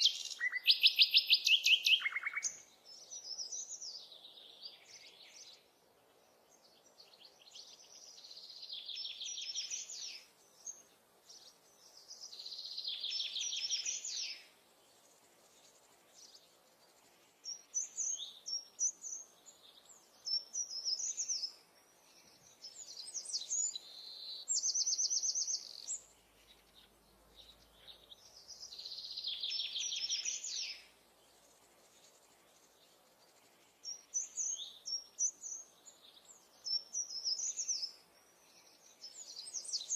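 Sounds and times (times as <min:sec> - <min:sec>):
short bird chirps: 0:00.0 - 0:02.6.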